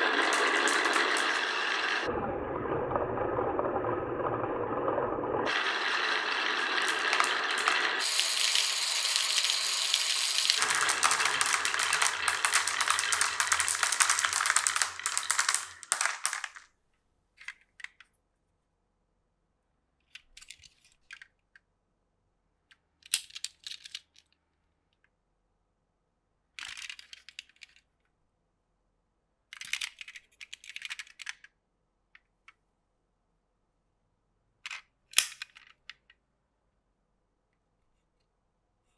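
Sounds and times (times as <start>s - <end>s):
marbles rattling along wooden run: 5.5s - 16.7s
single marbles clacking: 6.8s - 16.6s.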